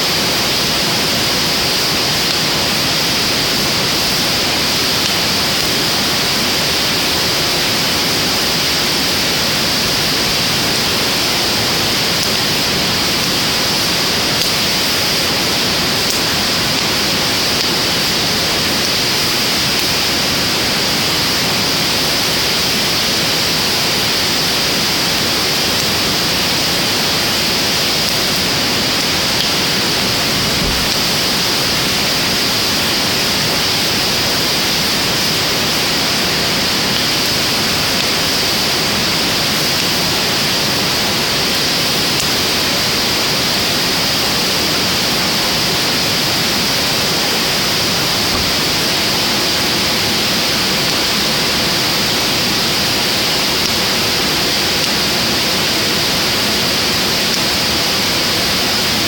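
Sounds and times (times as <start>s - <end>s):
fire burning with rushing hiss: 0.0s - 59.0s.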